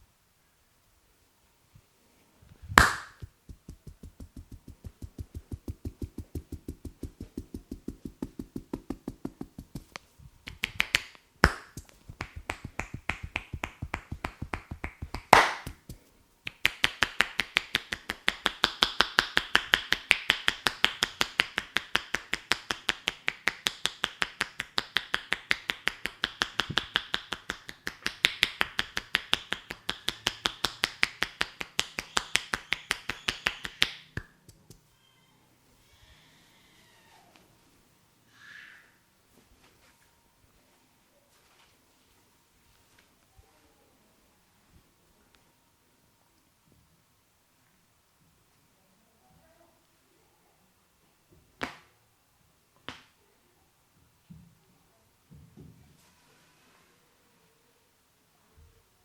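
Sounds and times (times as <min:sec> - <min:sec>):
hands striking head rapidly: 0:02.7 - 0:34.8.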